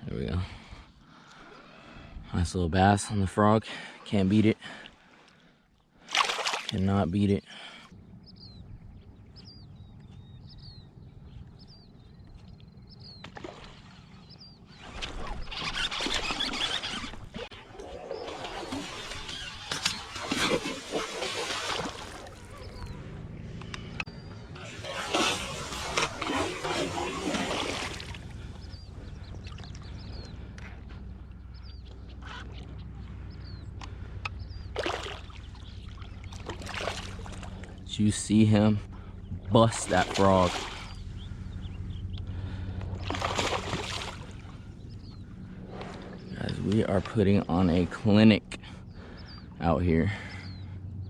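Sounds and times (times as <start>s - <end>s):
fish splashing on water: 6.1s - 6.7s, 17.6s - 22.8s, 24.8s - 28.4s, 34.8s - 37.7s, 39.9s - 40.9s, 43.0s - 44.5s
small birds chirping: 6.8s - 20.6s, 21.9s - 51.0s
steady low hum: 6.8s - 51.0s
low steady rumble: 7.7s - 13.2s, 21.9s - 51.0s
small bird chirping: 8.2s - 13.3s.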